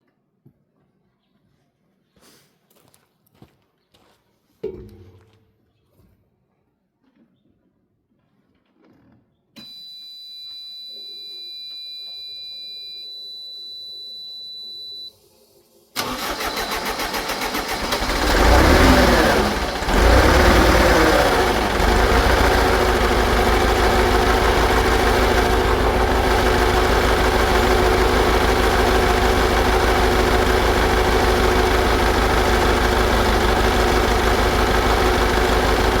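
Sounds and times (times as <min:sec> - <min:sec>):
diesel engine running: 0:16.0 - 0:36.0
starter motor cranking: 0:16.0 - 0:36.0.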